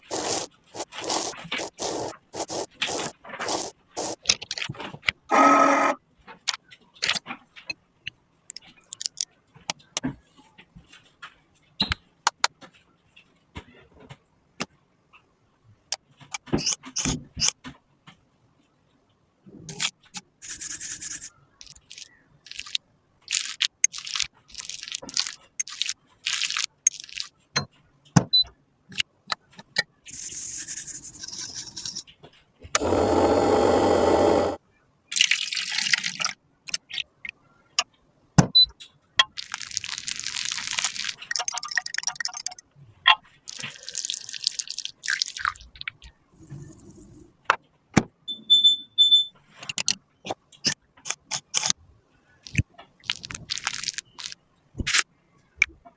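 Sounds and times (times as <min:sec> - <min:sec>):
tool scraping: 0:00.0 - 0:04.2, 0:32.8 - 0:34.6.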